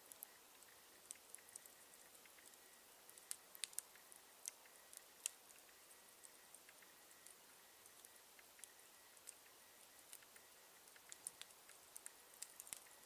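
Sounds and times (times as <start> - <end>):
campfire crackling and popping: 0.0 - 13.0.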